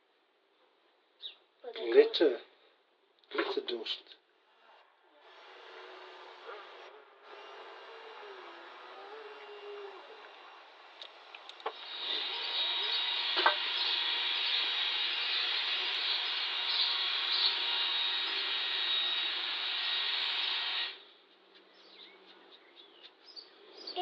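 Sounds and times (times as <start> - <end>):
hot-air blower running: 5.2 - 10.8, 11.7 - 21.0.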